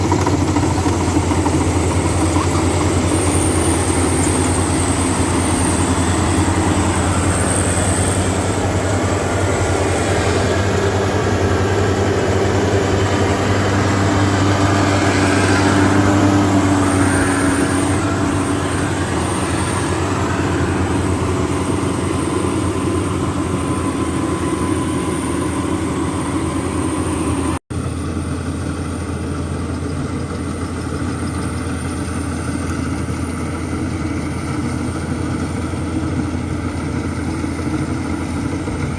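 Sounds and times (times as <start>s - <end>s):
heavy machine engine running: 0.0s - 38.9s.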